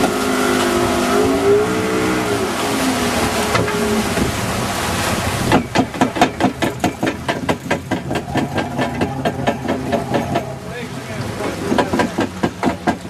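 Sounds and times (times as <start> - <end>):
boat engine running: 0.0 - 13.0
wind noise on microphone: 0.8 - 6.2.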